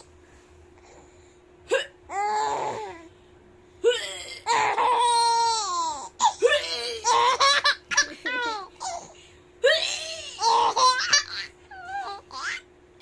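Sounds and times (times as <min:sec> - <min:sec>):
baby laughing: 0:04.5 - 0:12.6.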